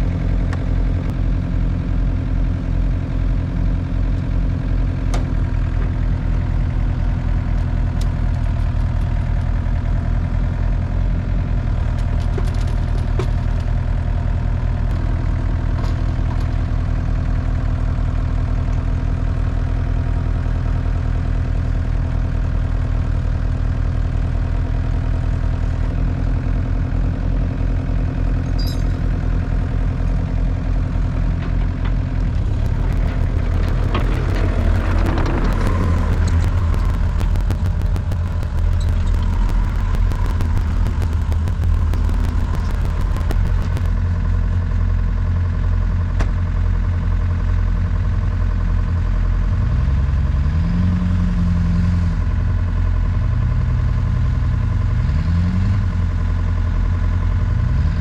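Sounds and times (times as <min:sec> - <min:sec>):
engine running steadily: 0:00.0 - 0:58.0
faint clicks and knocks: 0:31.4 - 0:43.9.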